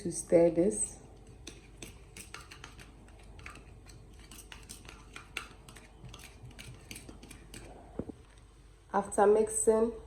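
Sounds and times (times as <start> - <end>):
spoon scraping a bowl: 1.0 - 7.9.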